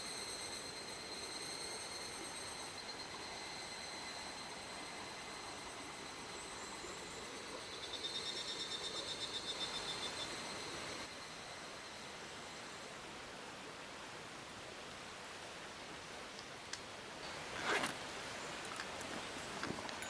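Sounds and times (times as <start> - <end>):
running water and rain hissing: 10.2 - 20.0.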